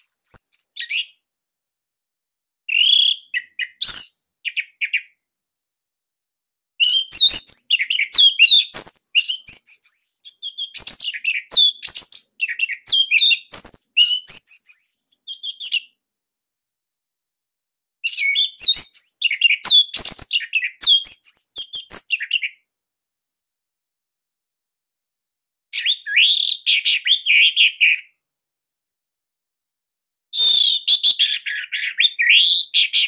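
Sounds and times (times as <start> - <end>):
bird singing high-pitched song: 0.0 - 1.2, 2.7 - 5.2, 6.8 - 16.0, 18.0 - 22.6, 25.8 - 28.2, 30.4 - 33.0.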